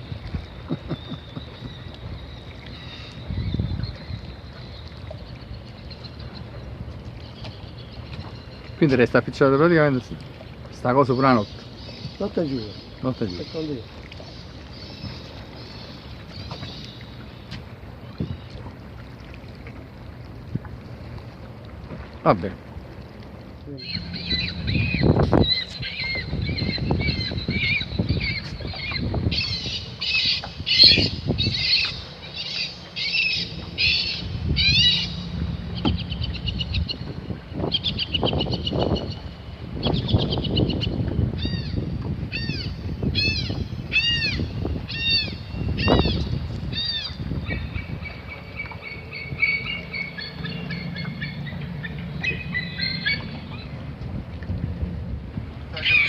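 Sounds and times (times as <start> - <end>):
birds calling: 0.0 - 54.0, 55.7 - 56.0
wind rumbling on microphone: 0.0 - 56.0
low rumble: 19.4 - 29.6.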